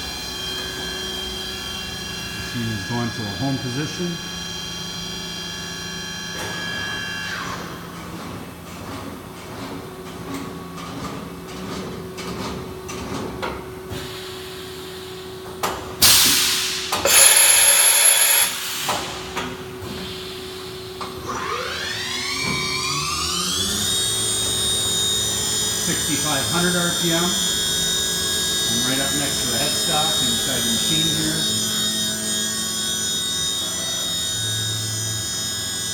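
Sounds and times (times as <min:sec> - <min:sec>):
machine spindle whine: 0:17.0 - 0:19.0.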